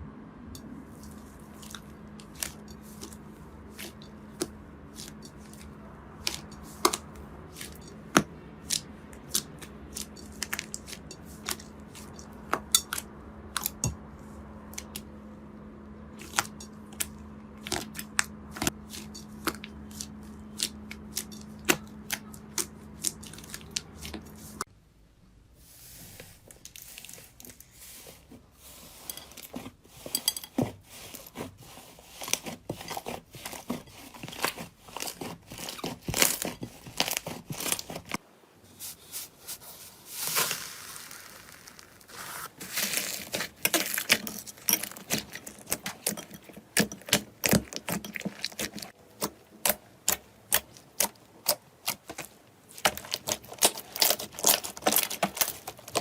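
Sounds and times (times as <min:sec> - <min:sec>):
slime crackling and popping: 0:40.2 - 0:46.2, 0:52.8 - 0:56.0.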